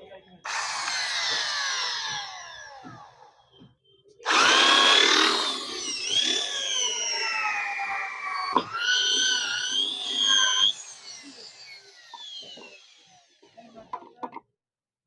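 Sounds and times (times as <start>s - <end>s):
drill spinning down: 0.5s - 3.6s, 4.2s - 13.9s
electric drill whining: 0.5s - 3.6s, 4.2s - 13.9s
drill bit knocking: 0.5s - 14.4s.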